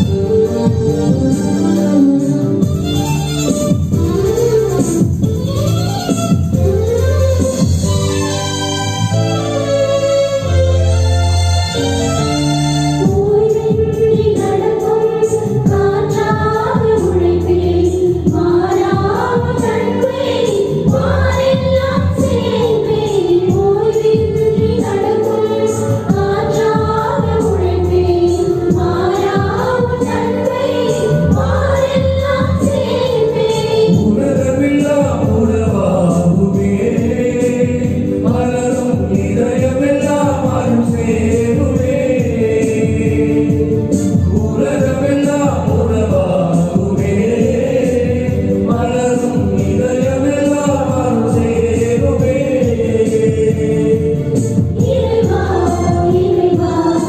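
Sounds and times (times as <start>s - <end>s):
instrumental accompaniment: 0.0s - 57.0s
church choir singing a hymn: 13.0s - 57.0s.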